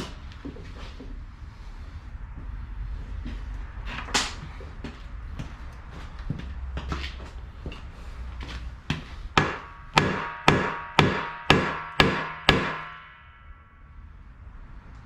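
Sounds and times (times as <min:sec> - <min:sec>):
hammer striking ringing metal: 0:09.4 - 0:13.9.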